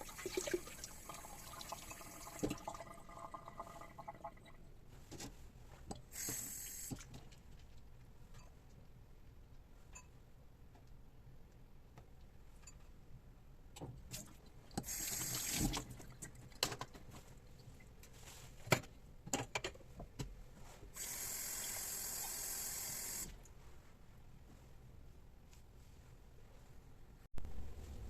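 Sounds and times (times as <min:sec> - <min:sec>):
water running: 0:00.0 - 0:04.5, 0:14.8 - 0:16.1.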